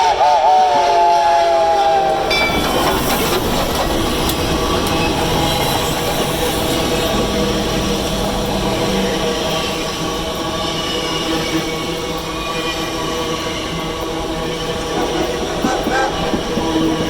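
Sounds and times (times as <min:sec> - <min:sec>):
steam locomotive whistle: 0:00.0 - 0:07.6, 0:14.6 - 0:17.0
train wheels clattering on rail: 0:01.5 - 0:17.0.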